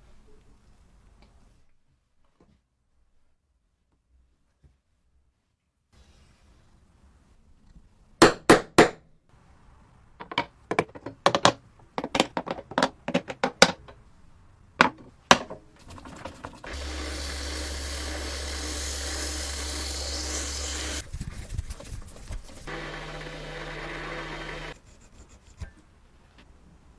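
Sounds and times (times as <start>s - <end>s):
power tool motor running: 15.8s - 24.8s.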